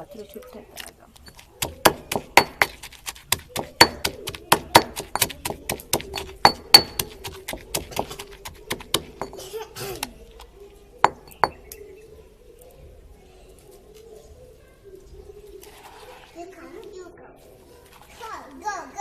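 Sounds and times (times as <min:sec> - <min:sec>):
pounding leaves in hard vessel: 0:00.3 - 0:11.8.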